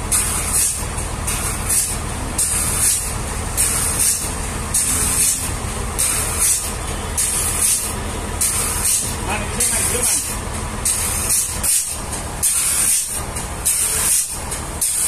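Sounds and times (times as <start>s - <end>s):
machinery low engine hum: 0.0s - 15.0s
rhythmic hiss: 0.0s - 15.0s.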